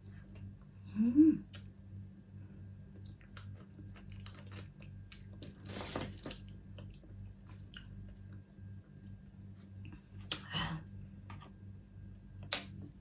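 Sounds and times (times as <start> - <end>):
chewing and crunching seafood: 2.9 - 5.8.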